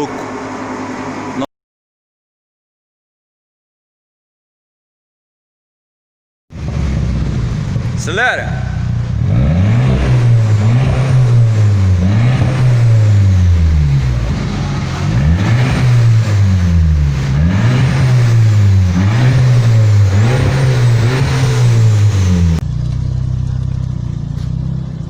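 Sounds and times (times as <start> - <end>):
car engine revving loudly: 6.6 - 23.8.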